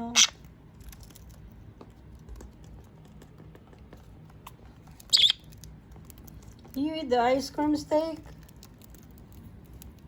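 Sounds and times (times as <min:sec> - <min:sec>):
budgerigar chirp: 0:00.1 - 0:00.4, 0:05.1 - 0:05.4
faint clicks and taps: 0:00.8 - 0:07.0.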